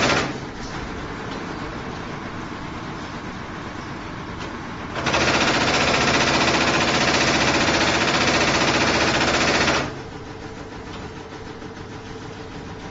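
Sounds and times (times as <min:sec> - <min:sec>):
steady machine hum: 0:00.0 - 0:12.9
press punching rapid strokes: 0:05.0 - 0:10.0.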